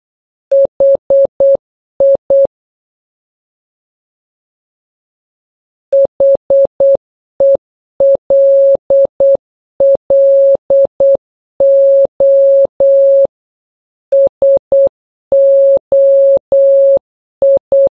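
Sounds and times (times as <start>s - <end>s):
morse code beeps: 0.5s - 2.5s, 6.0s - 13.3s, 14.1s - 17.9s.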